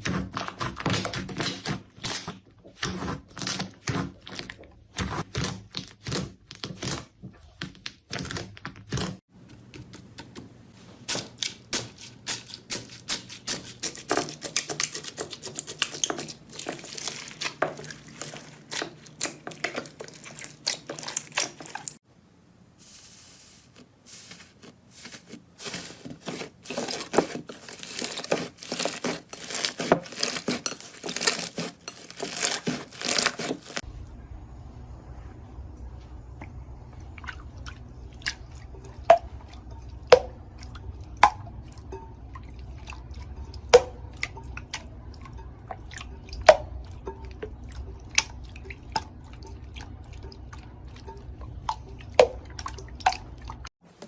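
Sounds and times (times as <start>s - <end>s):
slime crackling and popping: 26.7s - 33.8s.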